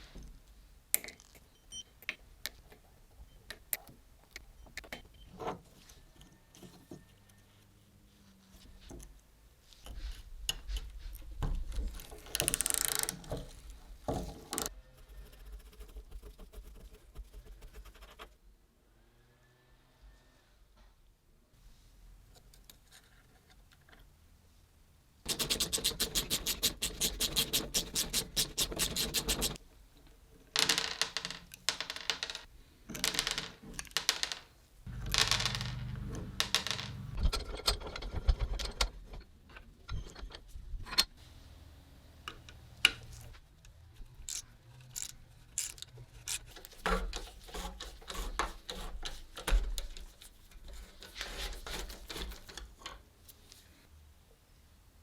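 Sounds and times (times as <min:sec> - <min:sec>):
tools and metal parts handled: 0:36.4 - 0:41.1, 0:44.0 - 0:53.0.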